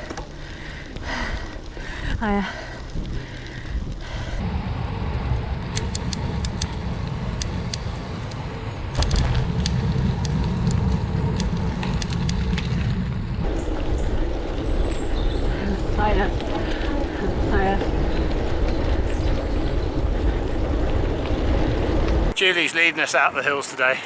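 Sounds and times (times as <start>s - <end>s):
bicycle tyres rumbling on gravel: 0.0s - 23.6s
sharp ticks and clicks: 5.6s - 14.1s.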